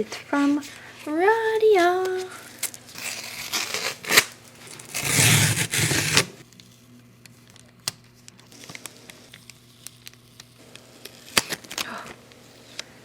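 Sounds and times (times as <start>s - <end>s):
paper packaging tearing and crinkling: 1.8s - 6.8s, 8.4s - 12.9s.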